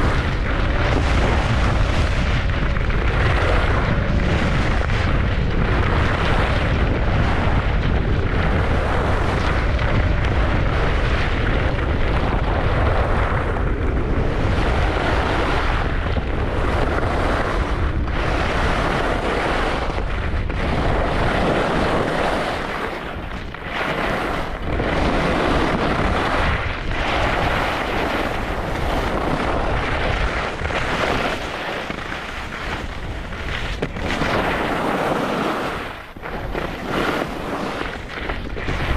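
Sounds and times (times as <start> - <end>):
wind buffeting microphone: 0.0 - 38.9
skis hissing and scraping on snow: 27.1 - 38.9.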